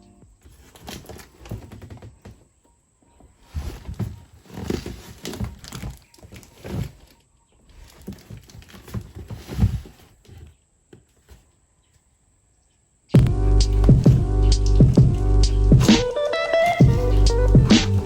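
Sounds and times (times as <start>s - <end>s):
rustling of things handled: 0.3s - 12.3s, 13.6s - 18.0s
upbeat background music: 13.2s - 18.0s.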